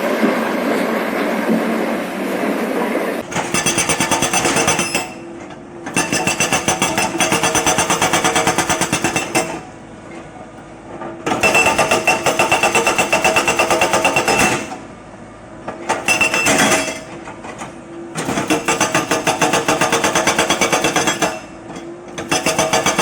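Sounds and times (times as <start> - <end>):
hydraulic breaker hammering: 3.2 - 9.8, 11.2 - 14.8, 15.8 - 23.0.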